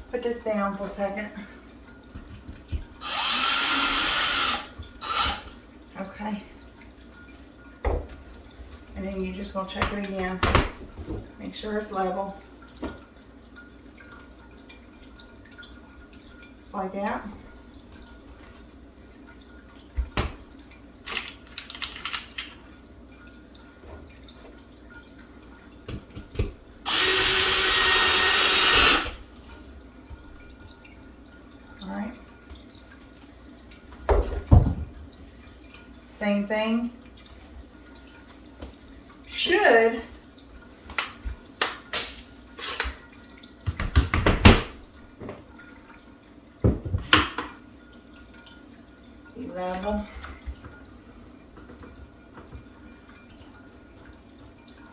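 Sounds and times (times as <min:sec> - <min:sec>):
power drill driving a screw: 0:03.0 - 0:05.5, 0:26.9 - 0:29.2
knocks and clatters of tools: 0:21.0 - 0:22.6.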